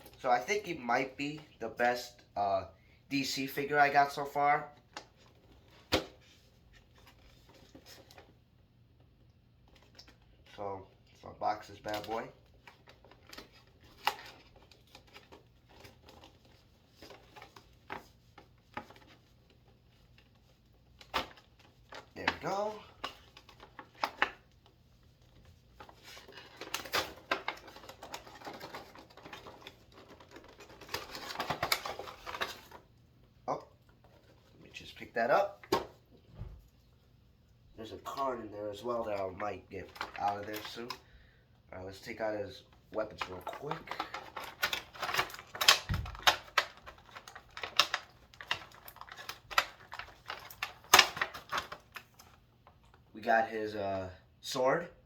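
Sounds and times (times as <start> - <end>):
packaging clicks and rustles: 11.7 - 33.0, 39.8 - 41.1, 42.7 - 53.1.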